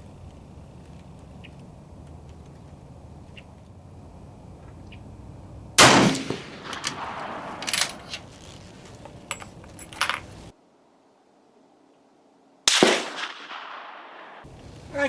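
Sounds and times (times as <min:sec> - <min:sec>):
rifle shot with echo: 0:05.8 - 0:08.2, 0:12.7 - 0:14.8
metallic clicks and clanks: 0:06.6 - 0:10.5.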